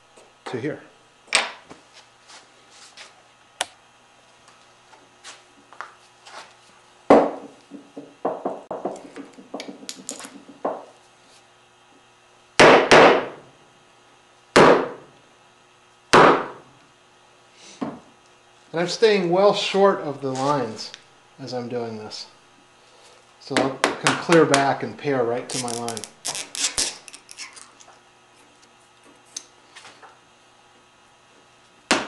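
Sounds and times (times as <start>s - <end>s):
wood chips levered loose: 25.5s - 27.8s.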